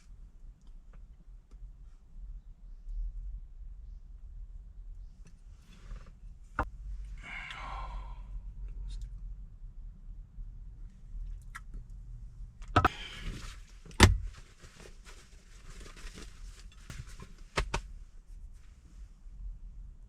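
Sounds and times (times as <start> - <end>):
light rustle: 13.1 - 17.5.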